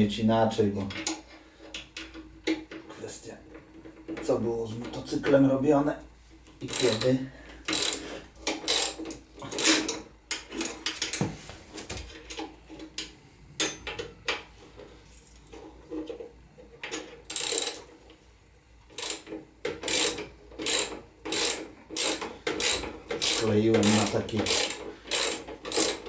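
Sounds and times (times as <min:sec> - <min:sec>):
socket ratchet clicking: 0:19.0 - 0:26.0.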